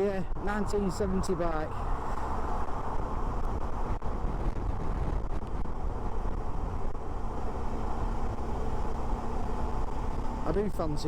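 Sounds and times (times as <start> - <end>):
wind and road noise: 0.0 - 11.0.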